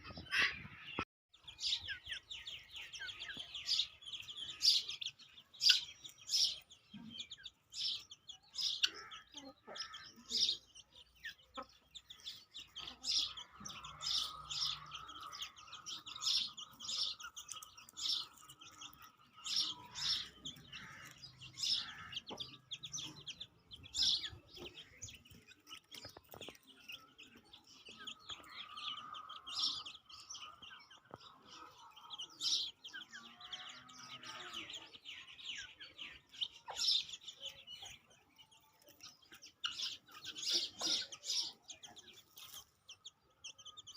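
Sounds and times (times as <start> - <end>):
chickens chirping: 0.0 - 43.9
chickens clucking softly: 22.2 - 33.4.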